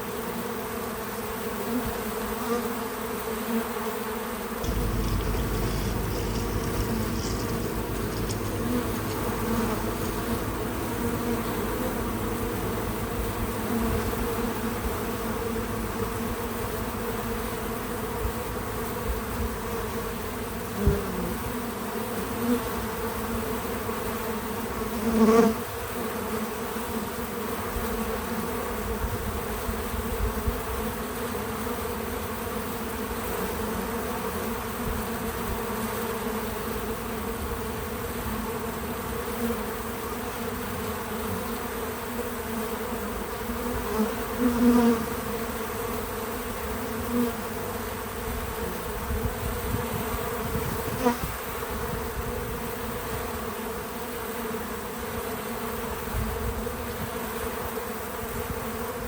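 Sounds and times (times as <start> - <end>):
bees buzzing: 0.0 - 23.2, 31.2 - 51.8
low rumble: 4.6 - 18.4.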